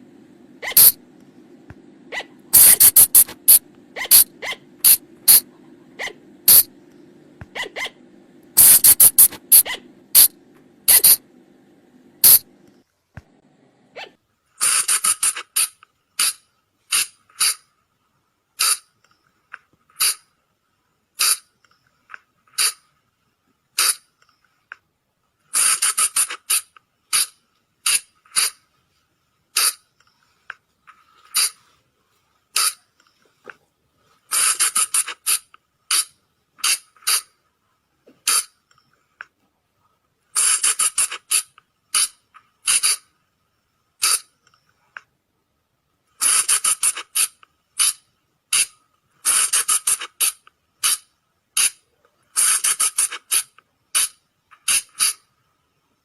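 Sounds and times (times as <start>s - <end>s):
shrill animal squeaks: 2.1s - 3.3s, 4.0s - 5.4s, 7.6s - 8.0s.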